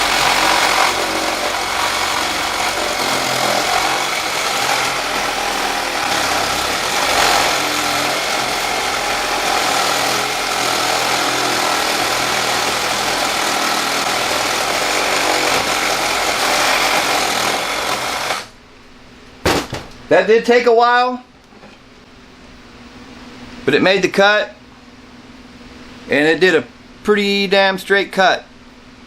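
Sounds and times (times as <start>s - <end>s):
reciprocating saw cutting metal pipe: 0.0s - 18.5s.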